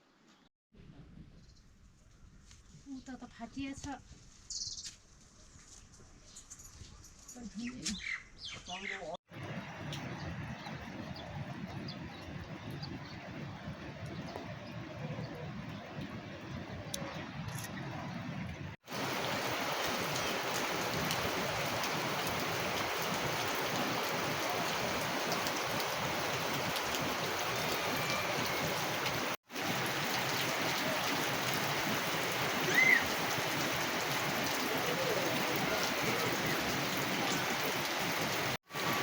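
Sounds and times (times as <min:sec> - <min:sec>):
steady rain falling: 0:09.3 - 0:39.0.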